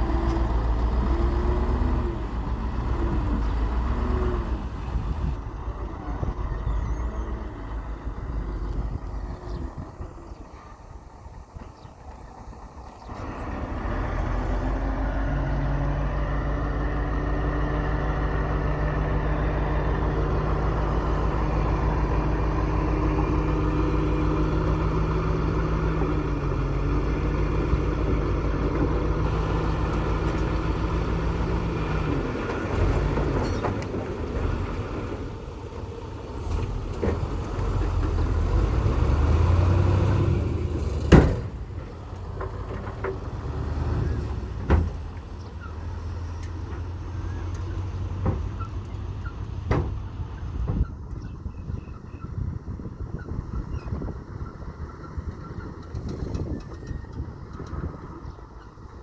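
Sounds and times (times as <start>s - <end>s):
truck diesel engine running: 0.0s - 51.1s.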